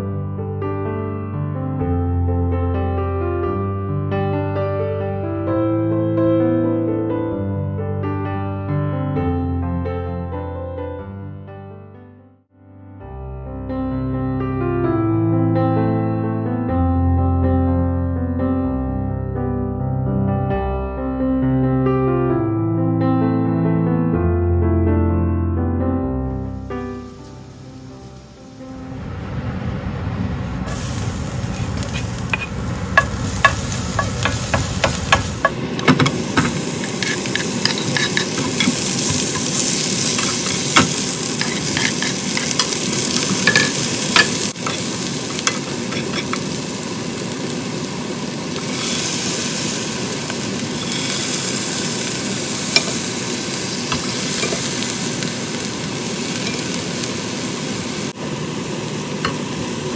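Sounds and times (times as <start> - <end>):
food sizzling in a pan: 26.3 - 29.4, 30.2 - 59.9
spatula scraping a pan: 31.4 - 46.6, 50.6 - 53.2.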